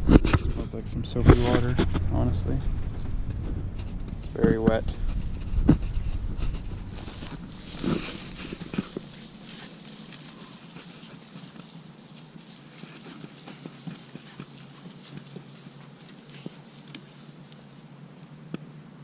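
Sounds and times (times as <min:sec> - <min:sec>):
wet wipe scrubbing plastic: 0:06.0 - 0:18.3.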